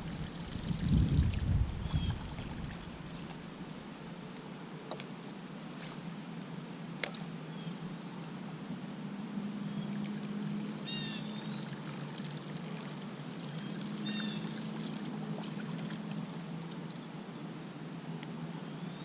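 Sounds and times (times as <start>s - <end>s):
water moving around a kayak: 0.0s - 4.0s, 9.9s - 17.6s.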